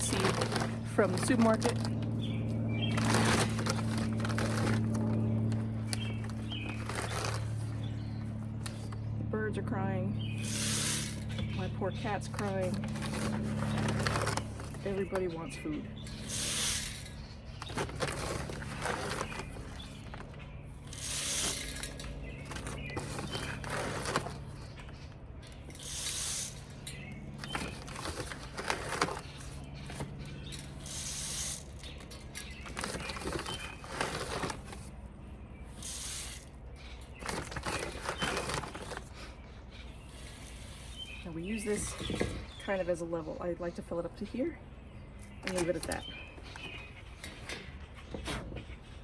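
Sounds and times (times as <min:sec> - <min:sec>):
birdseed pouring into feeder: 0:16.2 - 0:20.1, 0:20.9 - 0:24.6, 0:35.7 - 0:36.5.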